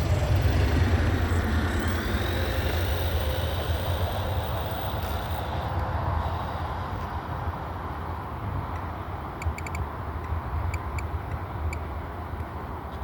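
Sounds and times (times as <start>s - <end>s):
electric motor whining: 0.0s - 6.6s
low rumble: 0.0s - 7.5s.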